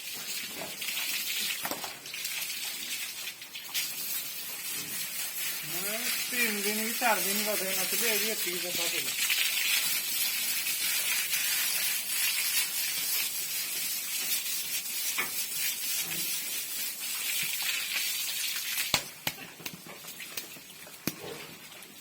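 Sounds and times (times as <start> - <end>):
water spraying hiss: 3.8 - 19.2.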